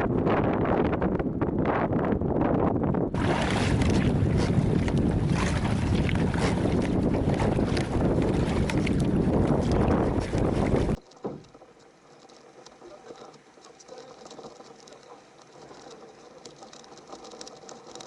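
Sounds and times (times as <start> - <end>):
wind buffeting microphone: 0.0 - 11.0
faint ticking and rustling: 7.7 - 18.0.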